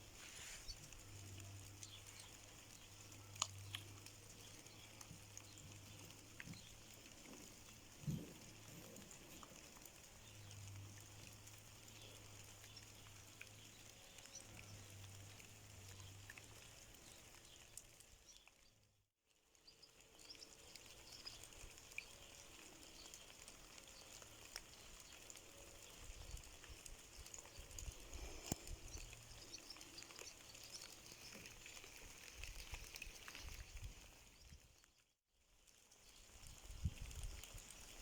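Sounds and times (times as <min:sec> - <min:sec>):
light rain hiss: 0:00.0 - 0:38.0.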